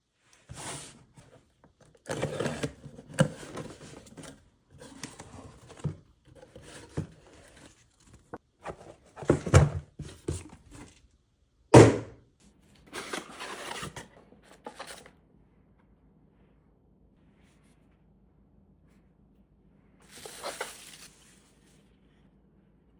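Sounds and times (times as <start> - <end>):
packaging rustling and scraping: 0.4 - 11.0, 12.9 - 15.1, 20.0 - 21.7
loud thump: 11.8 - 12.2.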